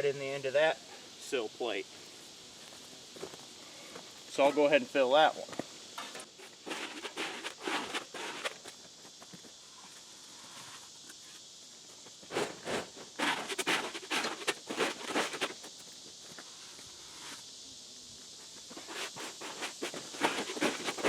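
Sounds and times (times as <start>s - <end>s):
trowel scraping wet concrete: 6.0s - 8.7s, 12.3s - 15.7s, 18.7s - 21.0s.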